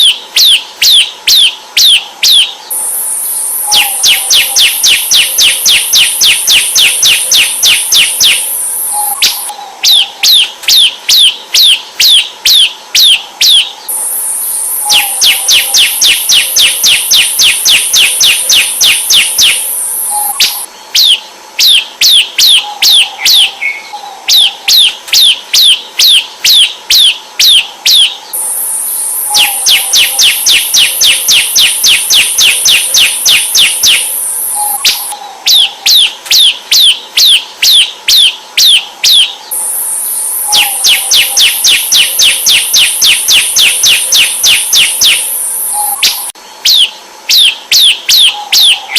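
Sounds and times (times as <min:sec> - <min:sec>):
steady high-pitched buzz: 0:00.0 - 0:48.9
bird sharp descending chirps: 0:02.7 - 0:10.4, 0:13.5 - 0:21.2, 0:28.4 - 0:35.2, 0:39.5 - 0:47.5.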